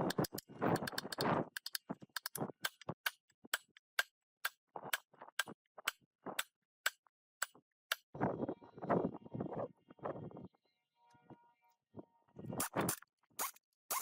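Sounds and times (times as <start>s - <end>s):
short scraping noises: 12.4s - 14.0s.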